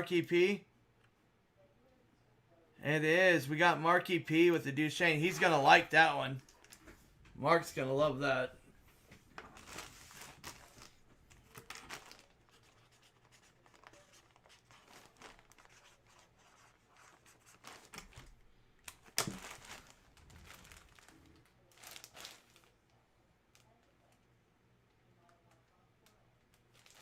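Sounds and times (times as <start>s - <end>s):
packaging crinkling and tearing: 9.4s - 22.9s, 26.5s - 27.0s.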